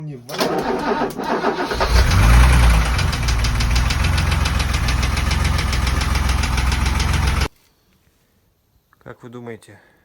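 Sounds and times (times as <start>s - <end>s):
car engine knocking: 2.5s - 7.5s.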